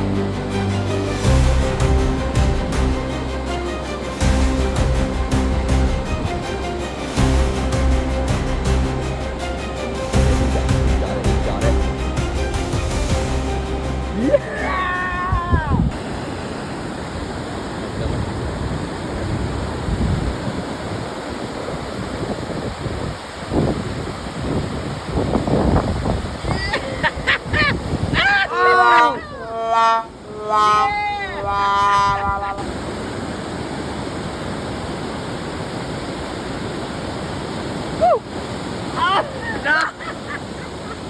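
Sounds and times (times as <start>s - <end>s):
waterfall rushing: 0.0s - 41.0s
wind buffeting microphone: 14.8s - 35.0s.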